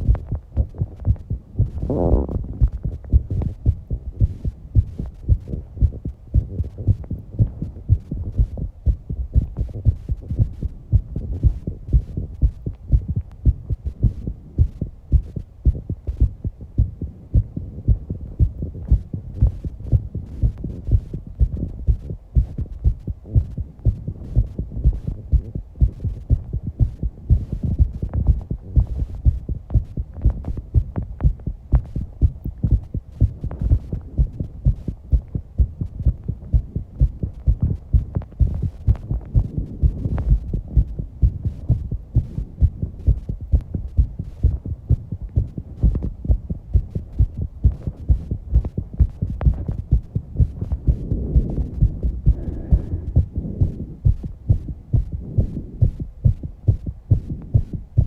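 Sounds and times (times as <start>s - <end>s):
fast heartbeat: 0.0s - 58.0s
faint breathing: 50.9s - 54.4s.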